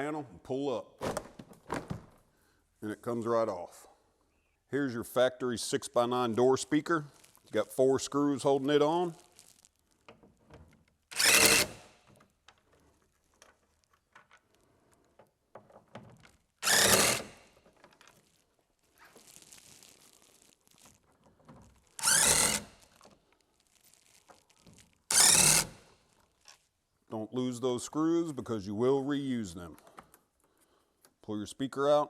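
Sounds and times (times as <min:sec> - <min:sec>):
power drill whining: 0:11.1 - 0:12.1, 0:16.6 - 0:17.6, 0:22.0 - 0:22.8, 0:25.1 - 0:25.9.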